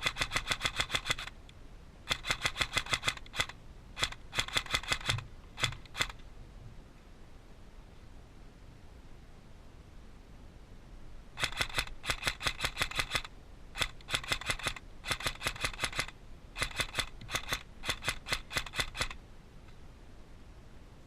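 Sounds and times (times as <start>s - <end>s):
airsoft gun firing bursts: 0.0s - 1.4s, 2.1s - 6.2s, 11.4s - 19.2s.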